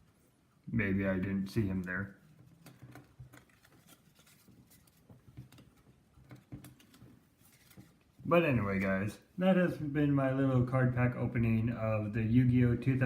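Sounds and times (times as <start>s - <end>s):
trading cards being shuffled: 1.6s - 9.1s.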